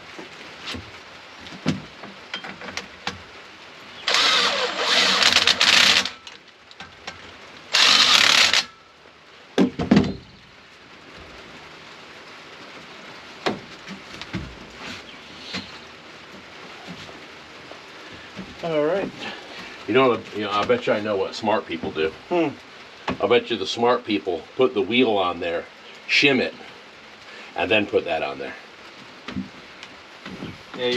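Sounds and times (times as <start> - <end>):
power tool whirring: 4.0 - 6.4, 7.7 - 8.7.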